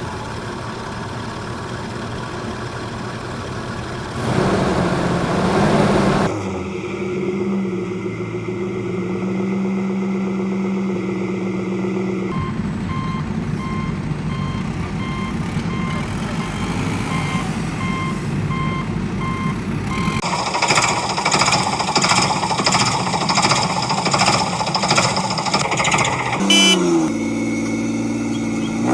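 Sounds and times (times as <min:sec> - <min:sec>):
heavy vehicle engine running: 0:00.0 - 0:06.4, 0:07.1 - 0:28.9
reversing alarm beeping: 0:12.3 - 0:20.3, 0:26.4 - 0:27.1
rapid jackhammer-like rattling: 0:13.4 - 0:19.0, 0:19.6 - 0:26.9.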